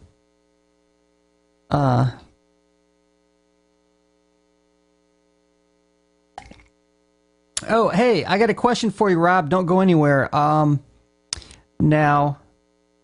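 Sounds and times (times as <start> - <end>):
faint electrical hum: 0.0 - 13.0
man saying a word: 1.7 - 2.3.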